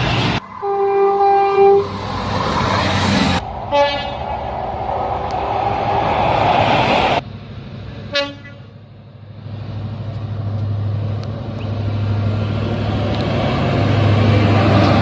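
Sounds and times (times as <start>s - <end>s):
locomotive engine rumble: 0.0s - 15.0s
train horn toot: 0.6s - 1.9s, 3.7s - 4.2s, 8.1s - 8.7s.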